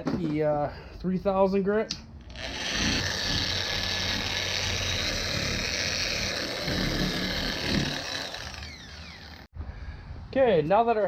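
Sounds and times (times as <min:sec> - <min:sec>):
orbital sander whirring: 0:02.2 - 0:09.5.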